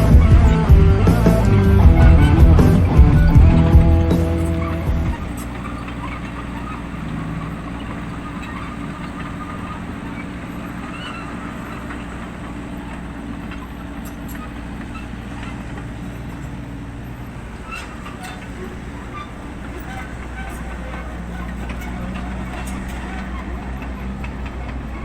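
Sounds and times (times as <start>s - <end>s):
background music: 0.0s - 5.3s
engine humming steadily: 0.0s - 25.0s.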